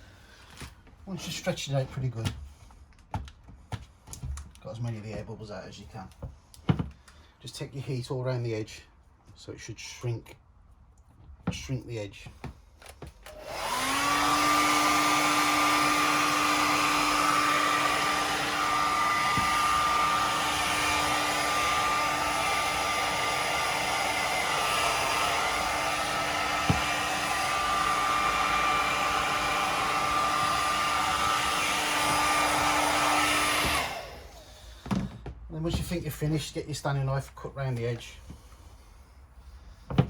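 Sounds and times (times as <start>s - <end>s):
hot-air blower running: 13.2s - 35.9s.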